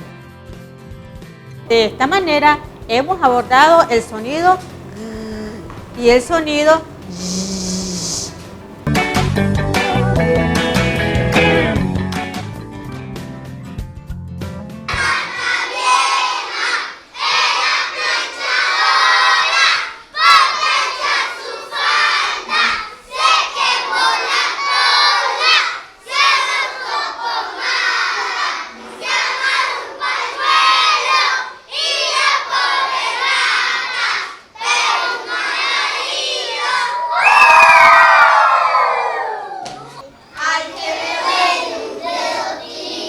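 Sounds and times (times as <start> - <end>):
children shouting together: 14.9 - 43.0.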